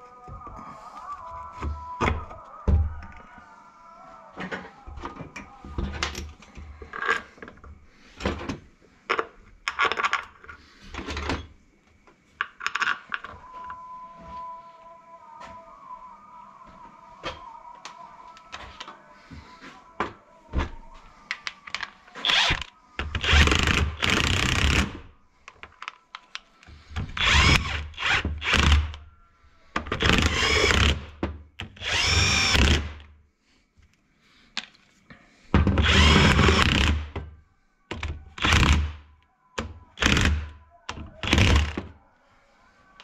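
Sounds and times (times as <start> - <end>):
power drill bursts: 22.2 - 25.0, 27.1 - 28.9, 30.0 - 31.1, 31.8 - 33.0, 35.8 - 37.1.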